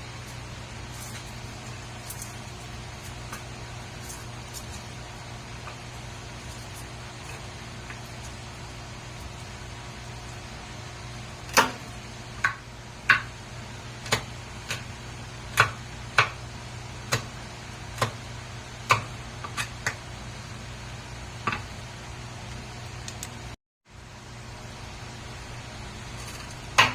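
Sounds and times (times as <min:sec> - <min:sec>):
steady low hum: 0:00.0 - 0:26.9
knife chopping on cutting board: 0:14.0 - 0:14.9, 0:15.5 - 0:16.4, 0:17.0 - 0:20.0.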